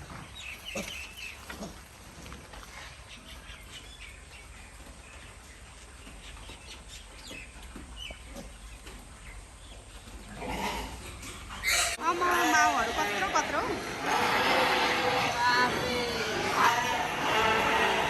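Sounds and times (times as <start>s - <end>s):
animal calls and chirps: 2.7s - 13.0s.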